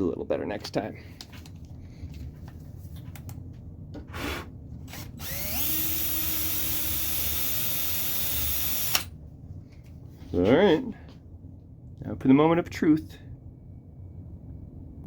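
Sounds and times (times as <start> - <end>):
cordless drill motor running: 4.9 - 9.1.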